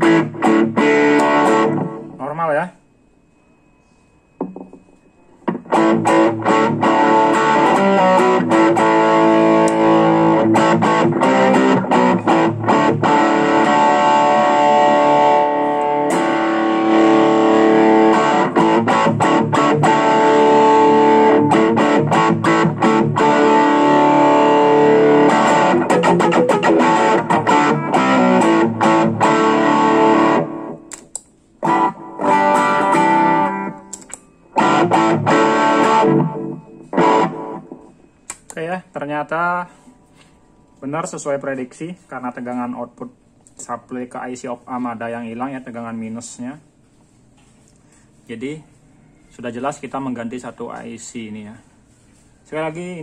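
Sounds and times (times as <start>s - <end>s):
distorted electric guitar: 0.0s - 2.8s, 4.4s - 41.4s.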